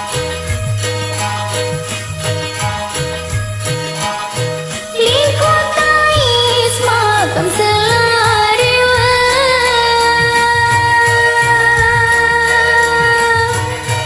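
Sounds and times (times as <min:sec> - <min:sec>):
karaoke backing track: 0:00.0 - 0:14.0
woman singing: 0:04.8 - 0:14.0.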